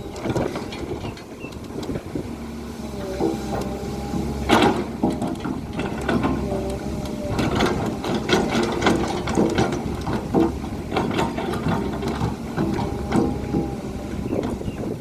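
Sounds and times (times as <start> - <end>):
excavator diesel engine running: 0.0 - 15.0
metallic clanks and rattles: 3.1 - 14.8.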